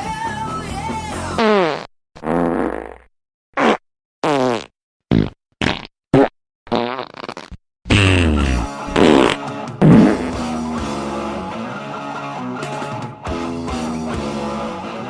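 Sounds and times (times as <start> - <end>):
fart sound effects: 1.4 - 10.8.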